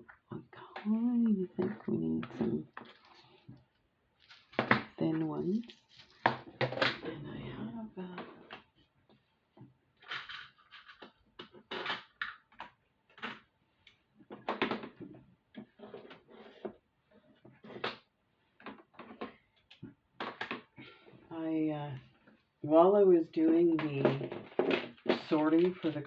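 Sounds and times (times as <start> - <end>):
plastic containers clicking and rattling: 10.0 - 13.5, 14.3 - 16.7, 18.6 - 20.8, 23.8 - 26.0.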